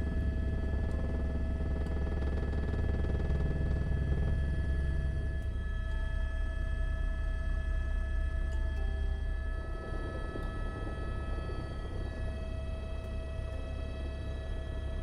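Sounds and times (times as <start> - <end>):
helicopter rotor and engine rumble: 0.0 - 15.0
high turbine whine: 7.4 - 15.0.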